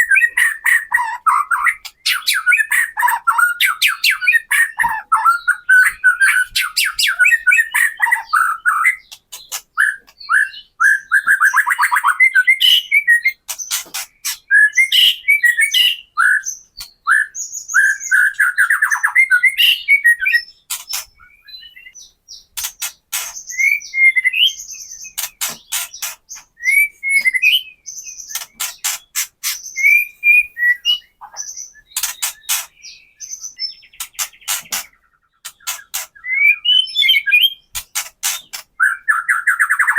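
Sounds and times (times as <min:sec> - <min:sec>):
bird whistled song: 0:00.0 - 0:22.5, 0:23.2 - 0:39.9.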